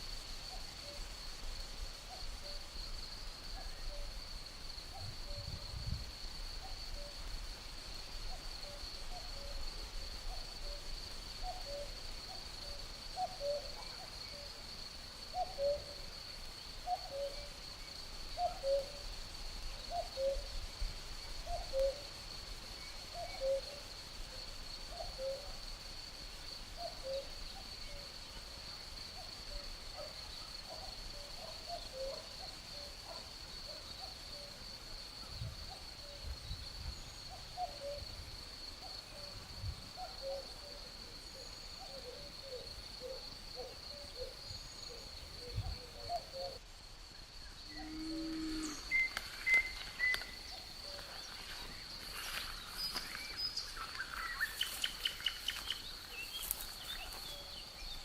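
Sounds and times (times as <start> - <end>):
crickets trilling: 0.0 - 58.0
cuckoo calling: 15.3 - 16.0, 18.4 - 19.0, 47.7 - 57.9.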